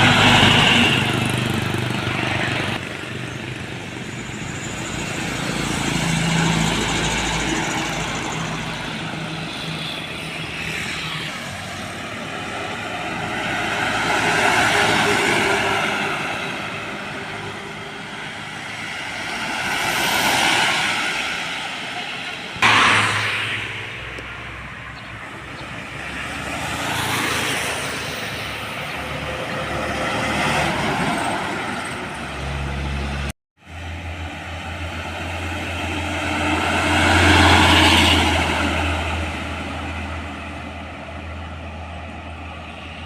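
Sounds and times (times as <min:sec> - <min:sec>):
road vehicles passing: 0:00.0 - 0:43.0
low engine drone: 0:22.2 - 0:25.8.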